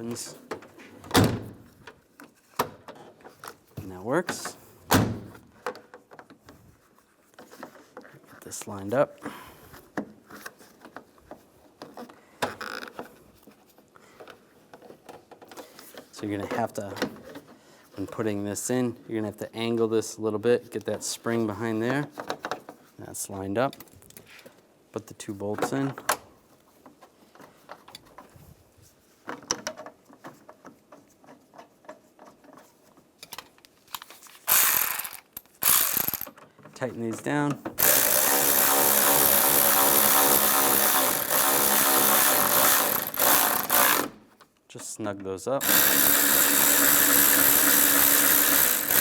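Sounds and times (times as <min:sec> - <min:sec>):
small parts clicking and tapping: 0:33.2 - 0:36.8.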